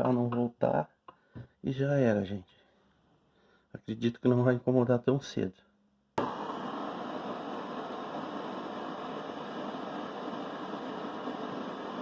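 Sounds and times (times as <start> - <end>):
hot-air blower rushing: 6.2 - 12.0.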